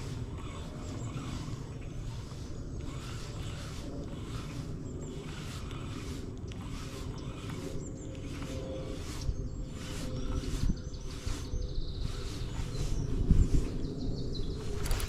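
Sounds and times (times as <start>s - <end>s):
low rumble of wind: 0.0s - 15.0s
fishing reel cranking: 14.8s - 15.0s.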